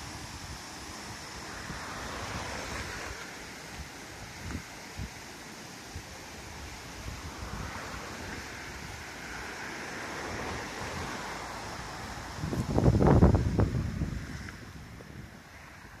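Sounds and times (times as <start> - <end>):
fast-moving floodwater rushing: 0.0 - 16.0
wind buffeting microphone: 5.9 - 9.2, 10.2 - 16.0.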